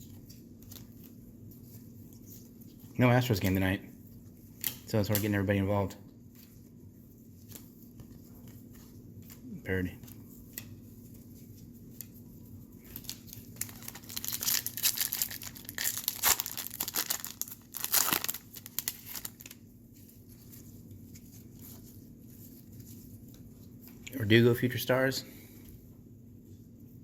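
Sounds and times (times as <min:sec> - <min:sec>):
wrapper being torn and crinkled: 0:12.9 - 0:19.7.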